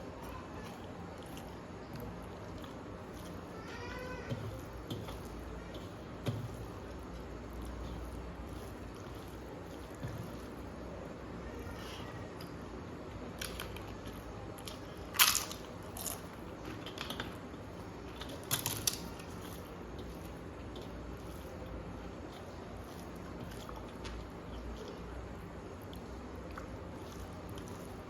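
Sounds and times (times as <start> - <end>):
person chewing: 0.6 - 3.6, 4.3 - 10.9, 18.0 - 28.0.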